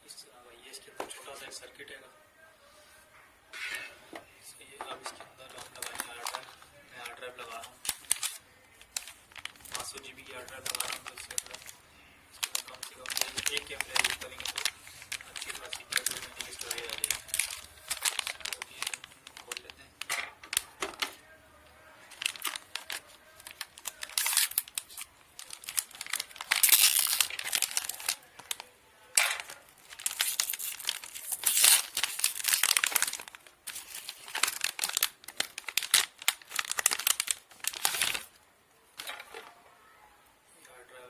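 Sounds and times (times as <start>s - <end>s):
packaging crinkling and tearing: 5.4s - 21.3s, 22.0s - 38.4s.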